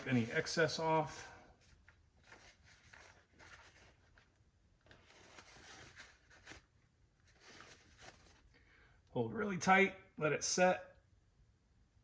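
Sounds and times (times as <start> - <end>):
paper towel rustling and rubbing: 0.0 - 8.5.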